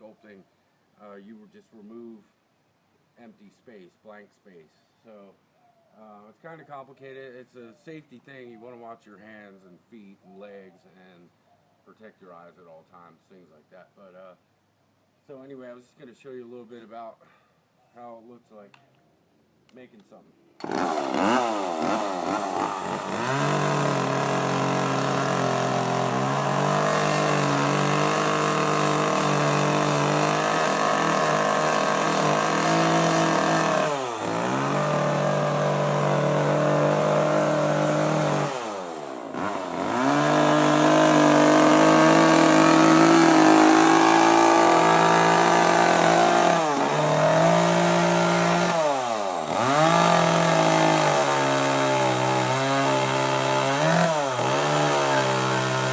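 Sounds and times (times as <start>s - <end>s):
chainsaw engine revving: 20.6s - 55.9s.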